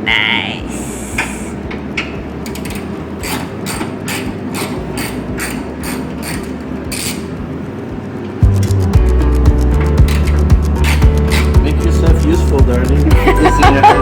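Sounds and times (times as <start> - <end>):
steady low hum: 0.0 - 14.0
hand tool clicking: 2.5 - 7.2, 10.0 - 11.6.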